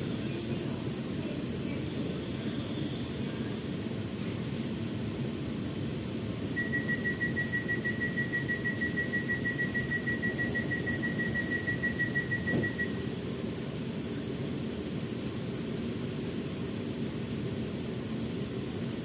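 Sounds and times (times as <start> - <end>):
train rumbling: 0.0 - 19.0
pulsing high warning beep: 6.5 - 13.2.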